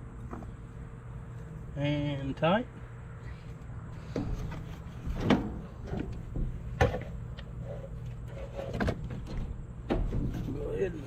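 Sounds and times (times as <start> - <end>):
steady low hum: 0.0 - 11.0
tools knocking and clunking: 4.1 - 7.5.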